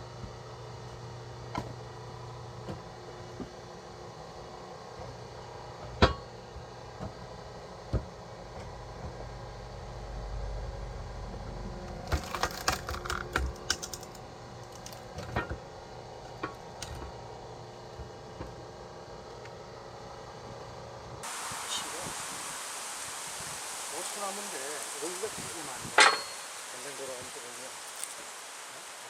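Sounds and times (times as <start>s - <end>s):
faint steady hum: 0.0s - 29.0s
wood knocking and cracking: 12.1s - 15.6s.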